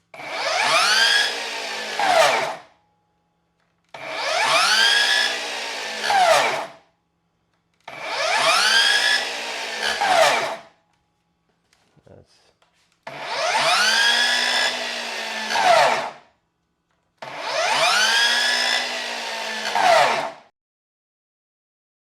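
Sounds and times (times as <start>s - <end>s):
miter saw motor spinning up: 0.2s - 2.6s, 4.0s - 6.7s, 7.9s - 10.6s, 13.1s - 16.2s, 17.2s - 20.4s.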